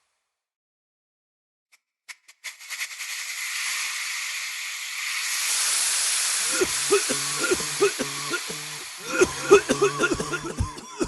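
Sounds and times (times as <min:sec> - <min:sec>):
steady hiss: 0:02.4 - 0:11.0.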